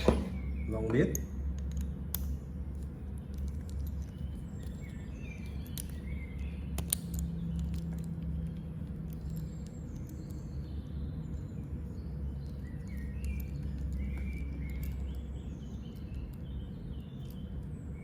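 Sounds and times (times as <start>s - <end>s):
low background hum: 0.0s - 18.0s
screwdriver bits clicking: 0.9s - 10.4s
faint bird chirps: 9.2s - 18.0s.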